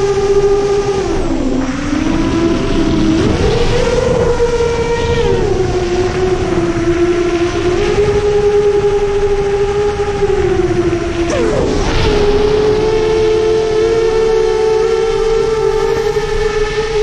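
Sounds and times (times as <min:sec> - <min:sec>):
rushing wind noise: 0:00.0 - 0:17.0
quadcopter motors buzzing: 0:10.4 - 0:17.0.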